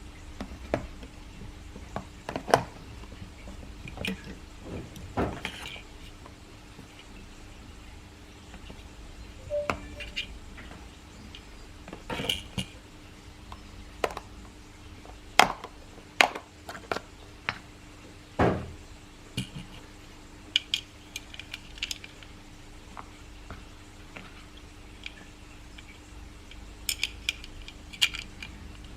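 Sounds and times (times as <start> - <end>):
faint steady hum: 0.0 - 28.9
small hard parts clicking: 25.0 - 28.9.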